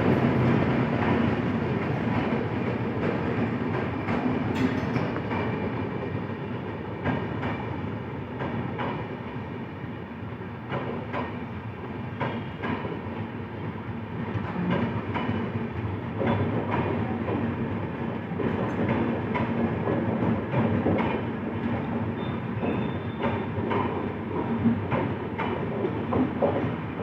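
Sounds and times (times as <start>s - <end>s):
train rumbling: 0.0s - 27.0s.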